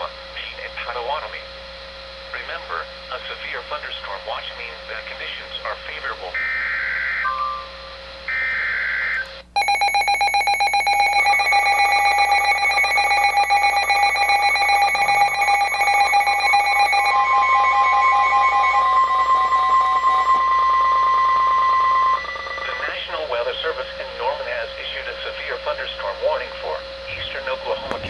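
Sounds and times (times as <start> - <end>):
alarm beeping in fast pulses: 9.6 - 22.8
steady single-pitch alert tone: 9.6 - 22.8.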